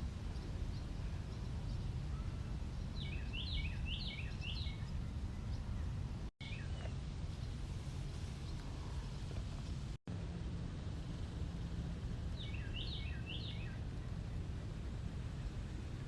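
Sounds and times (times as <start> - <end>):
low outdoor rumble: 0.0 - 16.0
songbird whistled notes: 3.0 - 5.5, 12.4 - 13.8.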